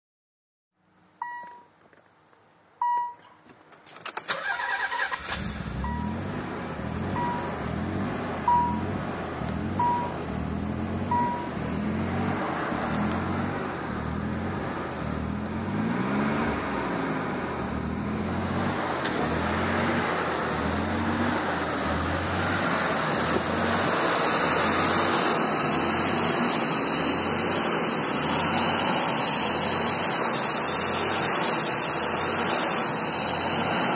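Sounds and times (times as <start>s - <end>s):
chime beeping: 1.2s - 1.7s, 2.8s - 3.3s, 7.1s - 7.7s, 8.5s - 8.9s, 9.8s - 10.3s, 11.1s - 11.7s
car engine idling unevenly: 4.2s - 15.8s, 16.7s - 33.9s
steady hiss: 24.0s - 33.9s.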